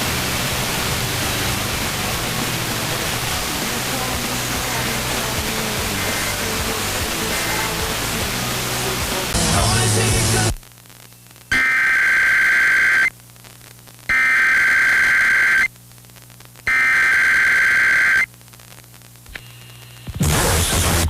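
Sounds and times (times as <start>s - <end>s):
loud hissy noise: 0.0s - 10.6s
two-tone digital data bursts: 11.5s - 13.1s, 14.1s - 15.7s, 16.7s - 18.3s.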